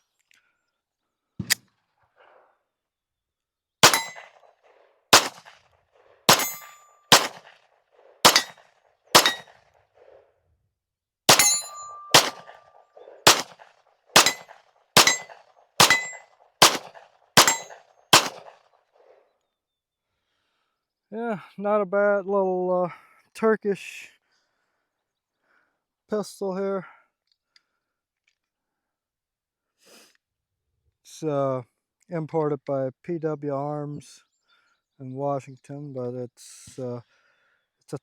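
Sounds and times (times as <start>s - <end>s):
pistol shots: 3.8s - 5.6s, 6.3s - 7.6s, 8.2s - 9.6s, 11.3s - 18.6s.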